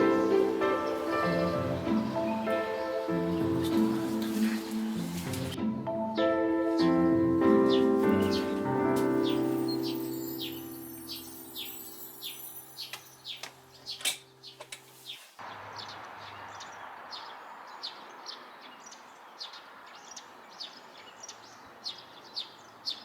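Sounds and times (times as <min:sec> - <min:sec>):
small birds chirping: 0:00.0 - 0:05.6, 0:06.2 - 0:23.0
soft background music: 0:00.0 - 0:14.6.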